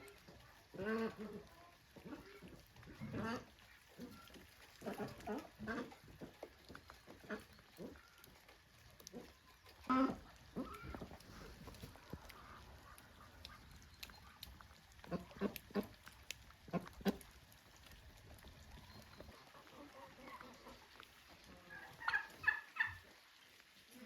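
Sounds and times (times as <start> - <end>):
poultry calling: 18.9 - 23.1.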